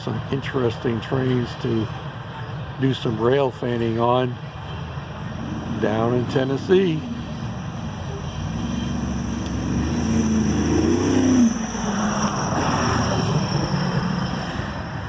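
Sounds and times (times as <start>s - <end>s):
diesel engine drone: 0.0s - 15.0s
freight train rumbling by: 0.0s - 15.0s.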